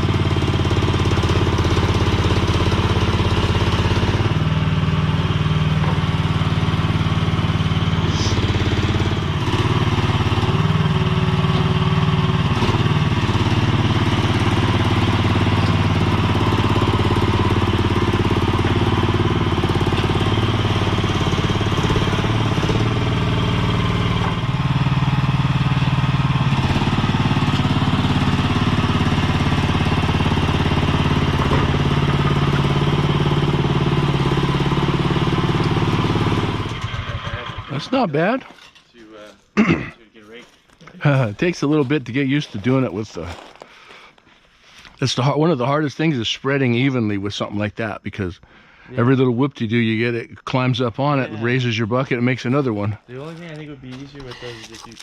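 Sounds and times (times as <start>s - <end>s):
small engine running: 0.0s - 38.1s, 54.0s - 55.0s.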